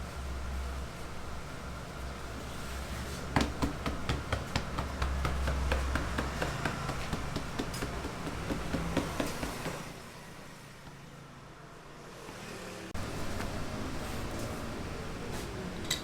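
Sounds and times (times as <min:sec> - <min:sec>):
hands slapping dough: 0:03.1 - 0:10.0.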